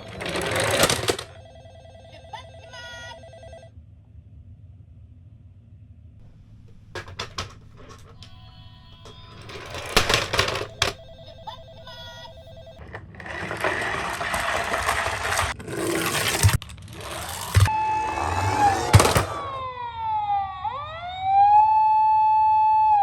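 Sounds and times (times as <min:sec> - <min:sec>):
plastic toys clicking and knocking: 0:00.0 - 0:01.4, 0:06.2 - 0:17.7, 0:18.4 - 0:19.5
electronic toy beeps and tones: 0:09.0 - 0:13.4.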